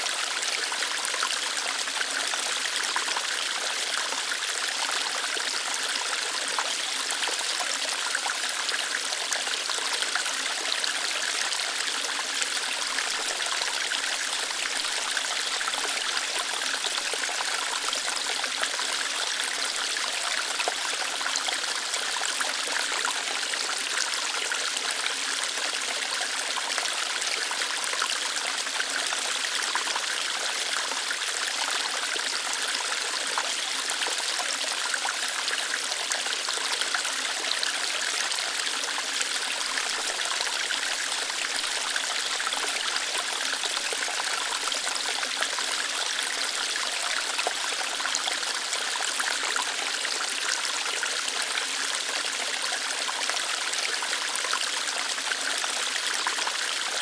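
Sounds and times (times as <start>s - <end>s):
water flowing over rocks: 0.0s - 57.0s.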